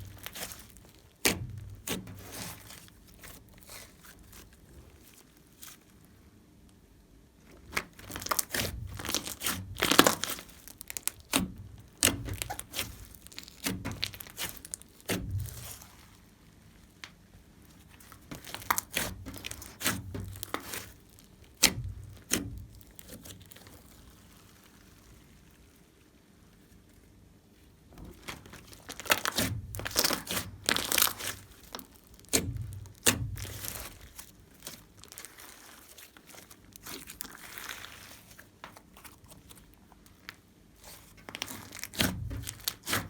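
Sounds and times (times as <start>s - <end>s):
sticky crackling and clicks: 0.0s - 4.3s, 7.7s - 15.8s, 18.0s - 25.2s, 28.2s - 40.4s
slime squeezed and stretched by hand: 0.0s - 6.1s, 7.5s - 27.0s, 28.0s - 43.0s.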